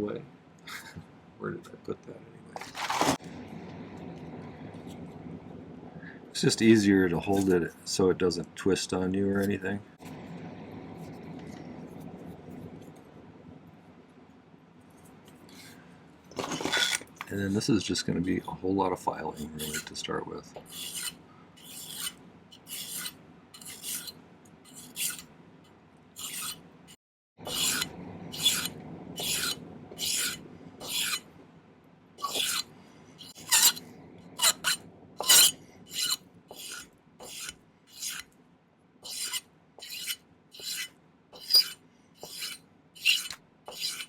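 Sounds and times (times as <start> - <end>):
hand file rasping on metal wire: 19.4 - 19.9, 20.6 - 25.3, 26.2 - 26.6, 27.5 - 31.2, 32.2 - 33.8, 34.4 - 38.3, 39.0 - 44.0.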